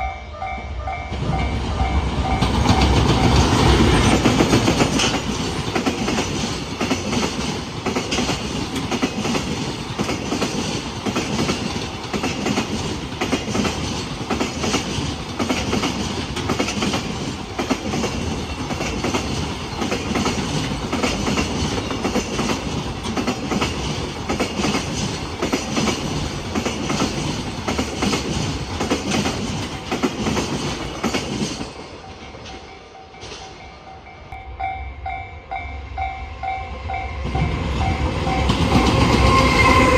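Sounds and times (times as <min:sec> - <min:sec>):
train wheels clickety-clack: 0:01.1 - 0:33.9, 0:36.4 - 0:39.9.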